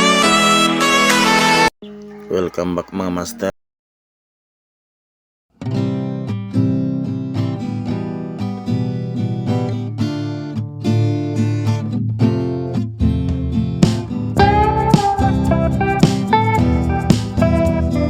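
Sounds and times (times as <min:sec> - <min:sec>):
strummed acoustic guitar: 0:05.6 - 0:18.0.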